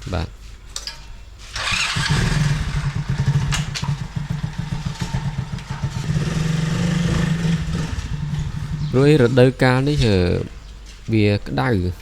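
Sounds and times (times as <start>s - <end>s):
small engine running unevenly: 1.5s - 9.7s.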